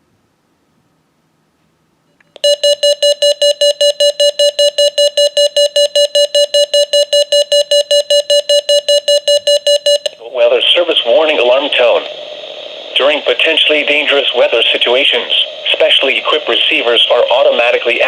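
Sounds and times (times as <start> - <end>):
alert siren beeping rapidly: 2.4 - 10.1.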